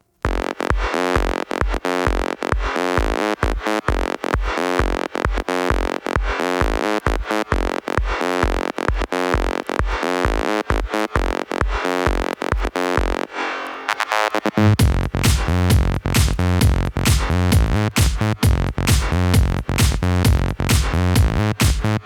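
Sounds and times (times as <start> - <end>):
kick drum: 0.2 - 13.2, 14.8 - 22.0
electronic dance music: 0.2 - 22.0
pulsing synthesizer chords: 0.3 - 22.0.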